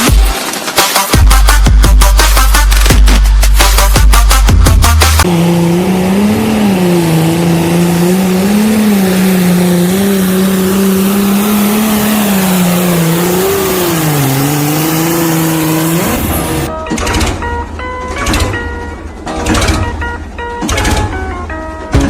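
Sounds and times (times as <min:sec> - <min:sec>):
music with a beat: 0:00.0 - 0:05.3
vehicle engine running: 0:01.2 - 0:16.7, 0:21.6 - 0:22.0.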